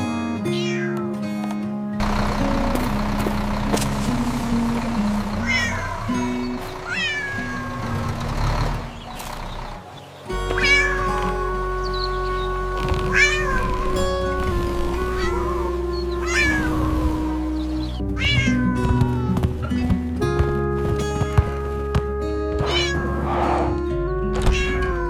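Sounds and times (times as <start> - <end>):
soft background music: 0.0 - 25.0
cat meowing: 0.4 - 1.1, 5.4 - 8.0, 10.5 - 11.1, 13.1 - 14.0, 15.0 - 19.5, 22.6 - 25.0.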